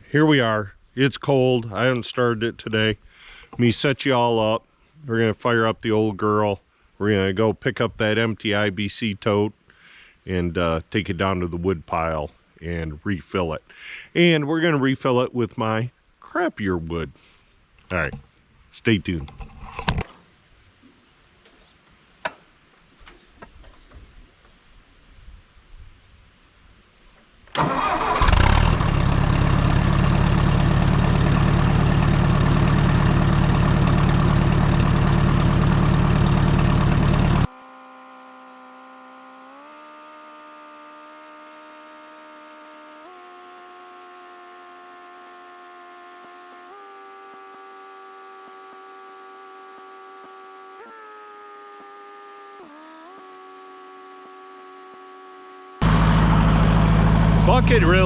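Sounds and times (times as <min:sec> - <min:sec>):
tractor engine running: 0:27.6 - 0:58.0.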